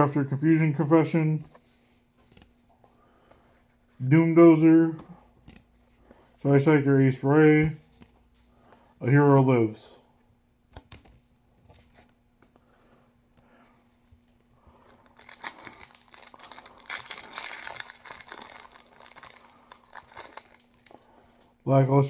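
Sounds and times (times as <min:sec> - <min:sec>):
foil wrapper crinkling and tearing: 0:14.9 - 0:21.2.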